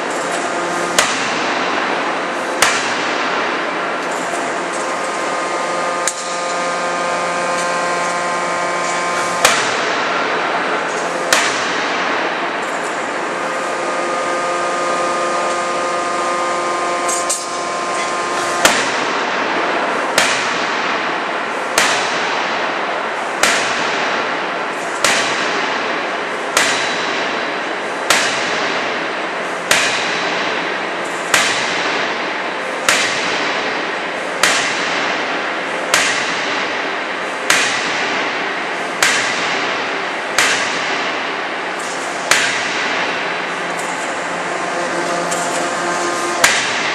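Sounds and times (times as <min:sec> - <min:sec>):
forging hammer blows ringing: 0:04.1 - 0:21.1, 0:21.7 - 0:22.6, 0:26.6 - 0:27.4, 0:29.7 - 0:30.4, 0:40.4 - 0:46.9.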